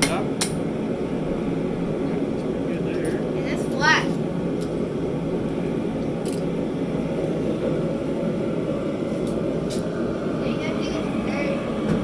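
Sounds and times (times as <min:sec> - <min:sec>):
forge roaring: 0:06.6 - 0:12.0.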